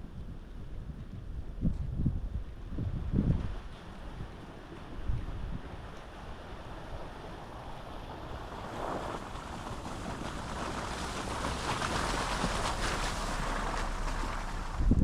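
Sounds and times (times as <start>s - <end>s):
wind on microphone: 0.0s - 15.0s
tyres splashing through slush: 3.5s - 15.0s.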